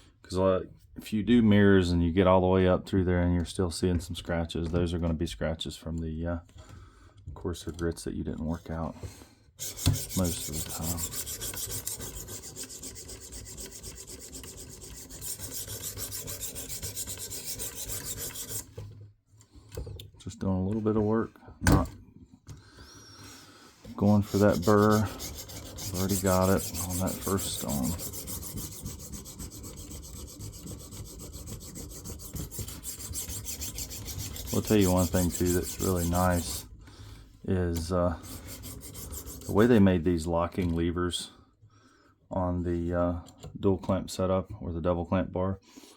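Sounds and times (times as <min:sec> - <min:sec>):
sharpening stone scraping knife: 0:09.6 - 0:18.7, 0:24.2 - 0:36.6.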